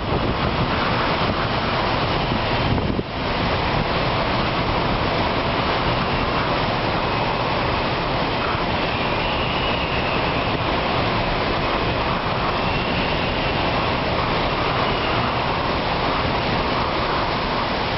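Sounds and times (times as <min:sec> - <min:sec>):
strong wind rushing: 0:00.0 - 0:17.9
faint high wind whistle: 0:06.0 - 0:17.7.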